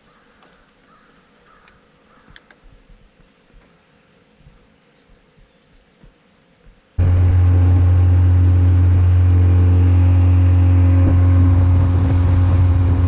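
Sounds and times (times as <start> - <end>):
boat motor running: 7.0 - 13.0.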